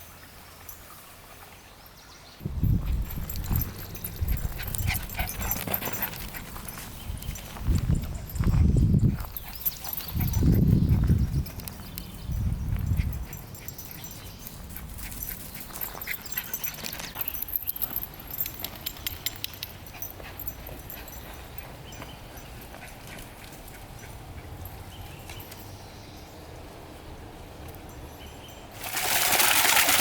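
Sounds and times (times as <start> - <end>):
light clicking and rustling: 13.6 - 24.2.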